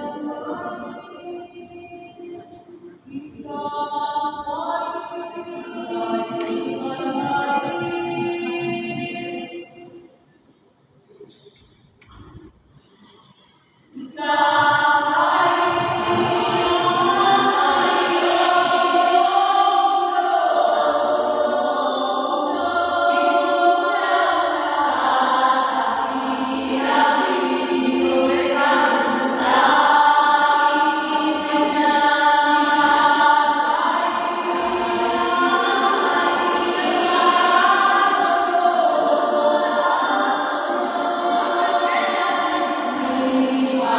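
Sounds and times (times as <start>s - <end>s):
choir singing in parts: 0.0s - 10.1s, 13.9s - 43.9s.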